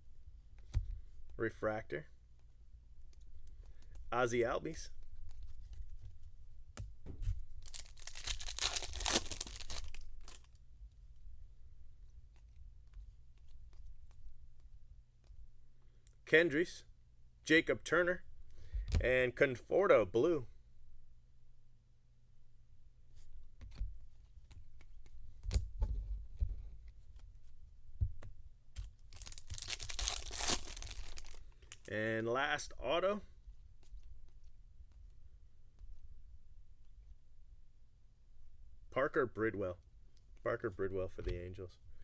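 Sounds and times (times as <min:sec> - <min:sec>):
foil wrapper tearing: 0:07.6 - 0:10.5, 0:29.1 - 0:31.9.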